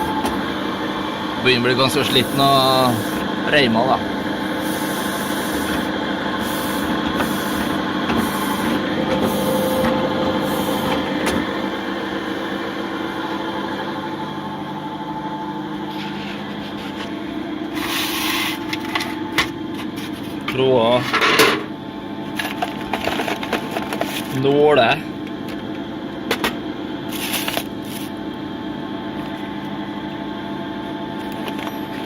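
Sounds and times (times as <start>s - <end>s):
sewing machine motor hum: 0.0s - 18.7s.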